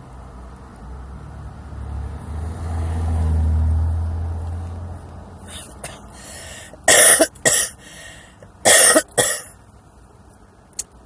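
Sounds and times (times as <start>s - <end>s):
woman coughing hard: 5.5s - 6.1s, 6.8s - 7.8s, 8.6s - 9.6s.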